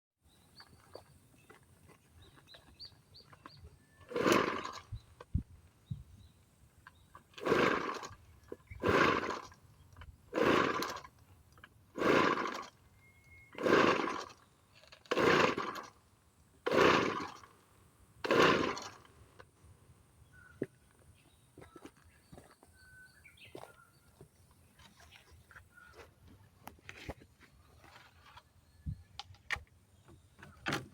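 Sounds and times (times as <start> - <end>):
recoil starter pull whoosh: 4.0 - 5.4, 7.4 - 9.6, 10.3 - 11.1, 13.5 - 14.4, 15.0 - 15.9, 16.6 - 17.5, 18.2 - 19.1.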